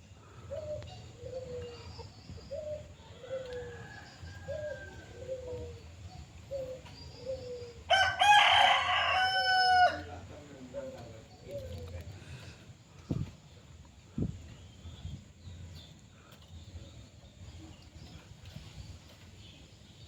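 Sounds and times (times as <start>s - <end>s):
rooster crowing: 3.1s - 5.6s, 7.9s - 10.3s.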